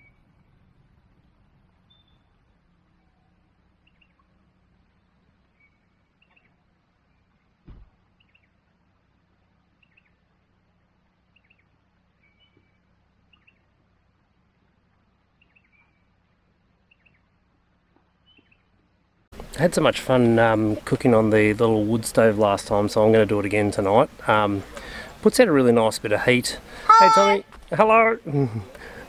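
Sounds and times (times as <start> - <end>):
faint bird chirps: 1.8 - 8.7, 11.2 - 13.9, 15.3 - 18.9
dull thump: 7.6 - 8.0.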